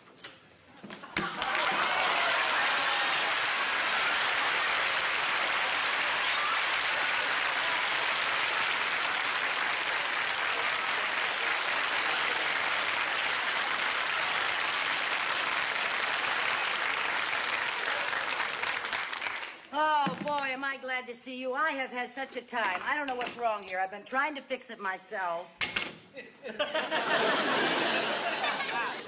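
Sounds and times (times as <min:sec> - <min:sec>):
studio audience applauding: 0:01.2 - 0:19.7.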